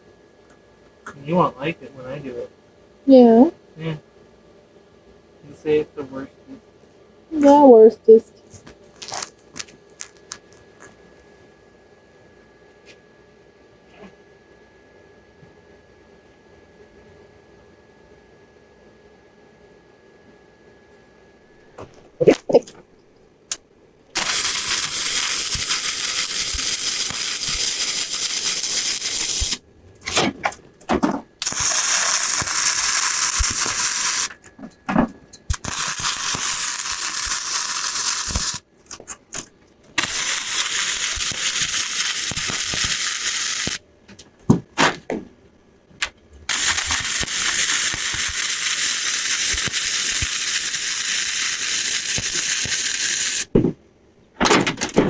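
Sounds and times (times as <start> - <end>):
welder arc crackling hiss: 9.0 - 10.9, 24.2 - 29.6, 31.4 - 34.4, 35.5 - 38.7, 40.0 - 43.8, 46.5 - 53.5.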